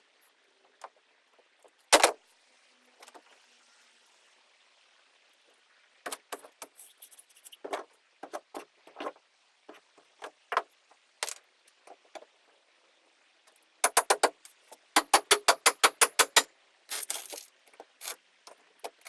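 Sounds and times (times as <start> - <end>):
hand tools knocking and scraping: 13.8 - 16.4.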